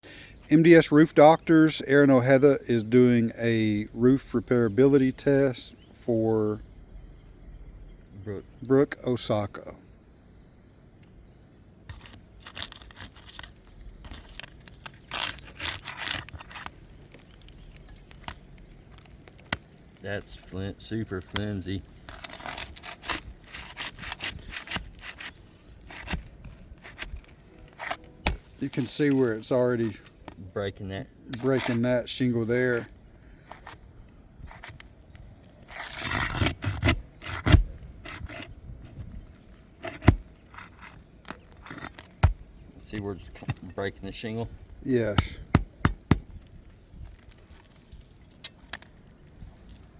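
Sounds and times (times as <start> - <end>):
roof shingles scraping and tearing: 11.9 - 30.4, 31.3 - 49.9
sharp snaps and knocks: 11.9 - 30.4, 32.8 - 49.9.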